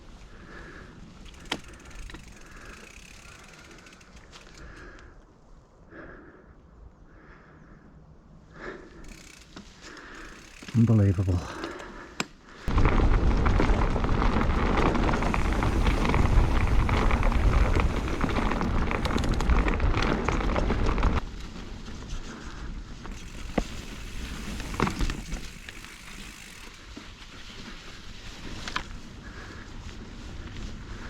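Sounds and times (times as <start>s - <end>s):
bike tyres rolling on dirt: 0.0s - 6.4s, 8.6s - 31.0s.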